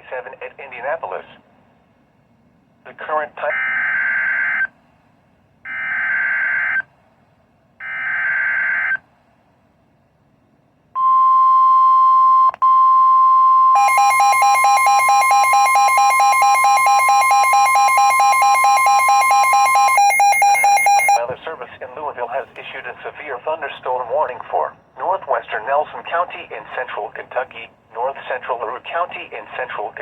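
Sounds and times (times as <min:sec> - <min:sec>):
steady warning alarm tone: 0:11.0 - 0:21.2
rapidly pulsing alarm tone: 0:13.7 - 0:21.2.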